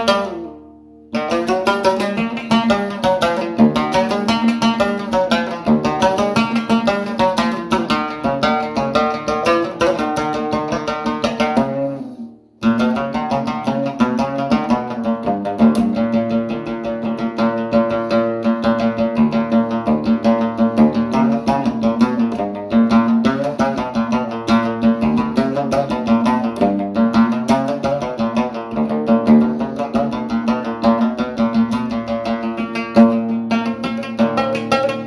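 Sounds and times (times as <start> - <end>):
plucked string instrument music: 0.0 - 35.0.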